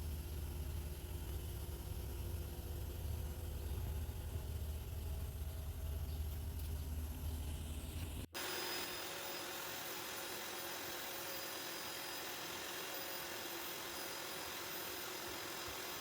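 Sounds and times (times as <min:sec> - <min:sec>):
vacuum cleaner hiss and whine: 0:08.0 - 0:16.0.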